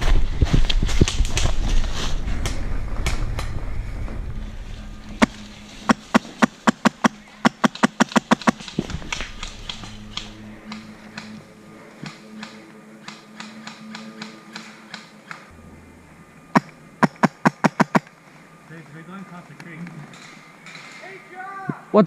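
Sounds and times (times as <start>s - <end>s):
low rumble on microphone: 0.0s - 5.9s
airsoft guns firing: 5.9s - 8.8s.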